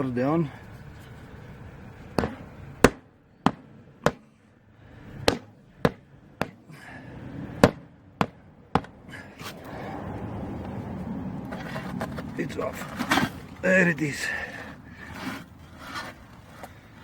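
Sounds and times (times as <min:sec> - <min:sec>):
hammer striking tire rim: 0:02.2 - 0:04.3, 0:05.2 - 0:06.6, 0:07.6 - 0:09.0.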